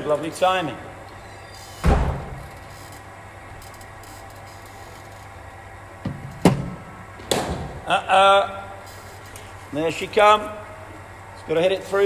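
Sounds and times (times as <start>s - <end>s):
bowling machine humming: 0.0s - 12.0s.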